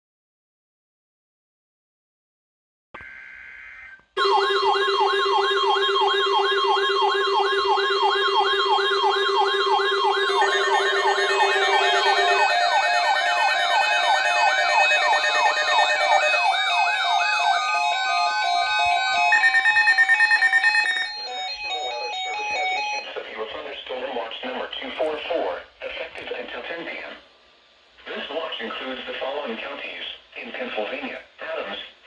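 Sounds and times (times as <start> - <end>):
warbling electronic alert siren: 3.0 - 23.1
steady beeping tones: 4.2 - 23.1
data header tones: 7.1 - 23.1
steady tone: 9.7 - 18.6.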